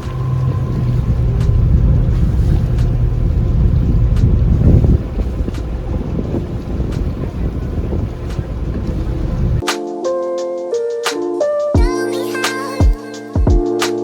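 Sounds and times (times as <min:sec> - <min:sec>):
boat engine and water rumble: 0:00.0 - 0:09.6
wind buffeting microphone: 0:00.0 - 0:09.6.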